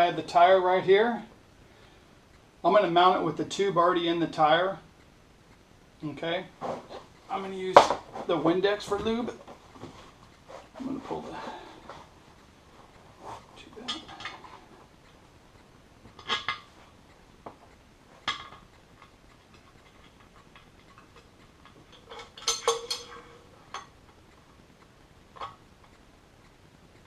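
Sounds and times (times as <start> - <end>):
metal clatter with ring: 18.2 - 23.9.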